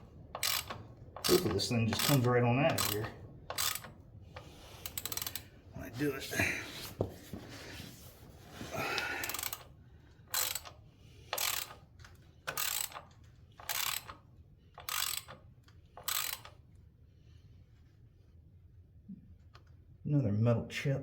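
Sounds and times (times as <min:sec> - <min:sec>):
ratchet wrench clicking: 0:00.3 - 0:05.5, 0:09.2 - 0:16.7.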